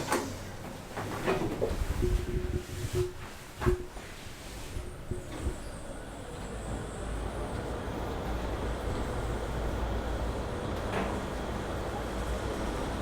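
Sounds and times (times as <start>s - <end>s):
elevator low rumble: 4.8s - 13.0s.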